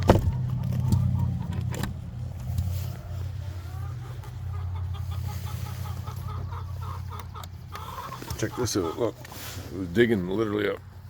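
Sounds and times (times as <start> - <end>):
low steady rumble: 0.0 - 8.0
chickens clucking: 0.0 - 11.0.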